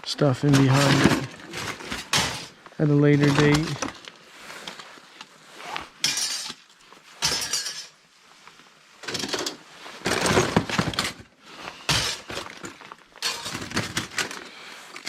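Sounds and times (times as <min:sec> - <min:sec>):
laptop parts clattering: 0:11.9 - 0:15.0.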